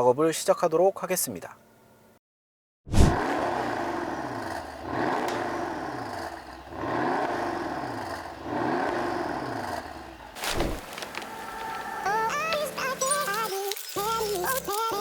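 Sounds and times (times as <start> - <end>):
car engine revving: 3.0 - 12.4.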